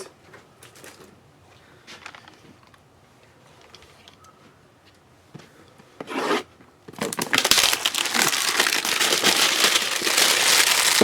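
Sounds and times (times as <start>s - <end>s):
packaging scrape: 6.1s - 11.0s
cardboard and wrapper crinkling: 6.9s - 11.0s.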